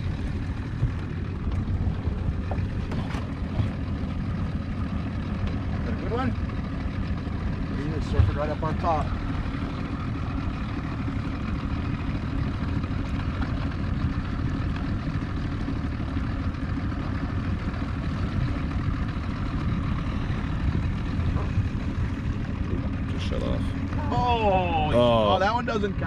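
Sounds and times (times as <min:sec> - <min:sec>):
boat motor rumbling: 0:00.0 - 0:26.0.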